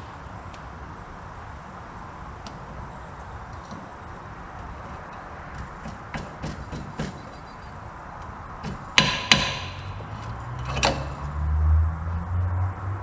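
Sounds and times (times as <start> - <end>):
tools clicking and tapping: 3.6 - 11.4
ringing metal strikes: 8.6 - 11.0.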